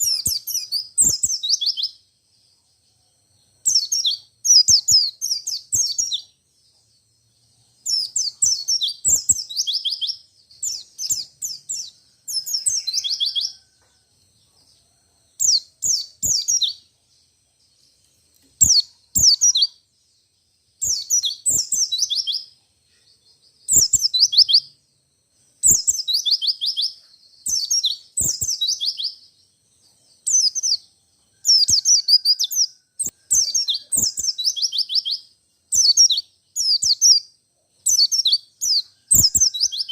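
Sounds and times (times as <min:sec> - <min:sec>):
bird singing high-pitched notes: 0:00.0 - 0:02.0, 0:03.4 - 0:06.7, 0:07.8 - 0:13.6, 0:15.4 - 0:16.9, 0:18.6 - 0:19.8, 0:20.8 - 0:22.6, 0:23.6 - 0:24.8, 0:25.6 - 0:29.4, 0:30.2 - 0:30.9, 0:31.5 - 0:39.9.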